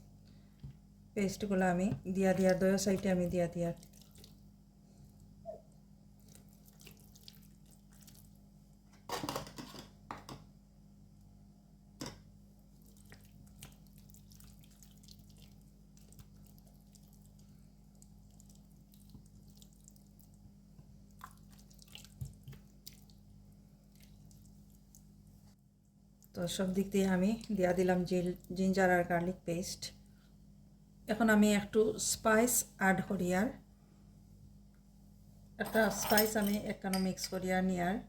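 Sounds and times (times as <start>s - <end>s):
wet squishing of paste on meat: 3.7s - 4.5s, 6.2s - 8.4s, 12.7s - 20.4s, 21.0s - 25.1s.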